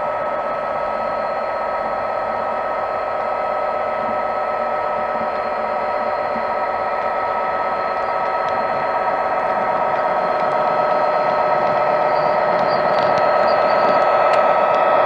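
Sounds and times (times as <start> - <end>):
model locomotive engine sound: 0.0 - 15.0.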